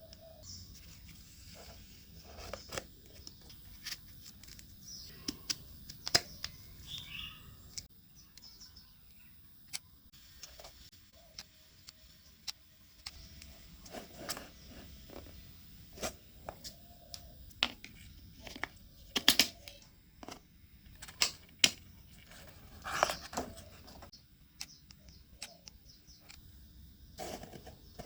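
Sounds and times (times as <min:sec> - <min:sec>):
hands handling cardboard: 0:00.4 - 0:07.0, 0:13.0 - 0:24.1.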